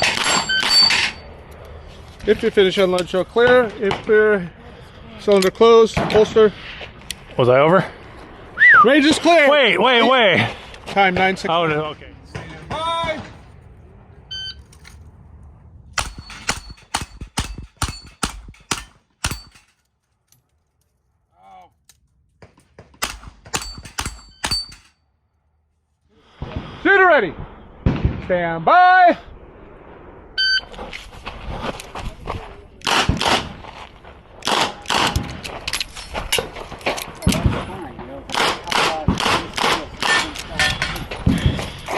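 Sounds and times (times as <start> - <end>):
revolver gunshots: 16.0 - 19.7, 23.0 - 24.9
metallic ring: 16.0 - 19.8, 23.1 - 25.0.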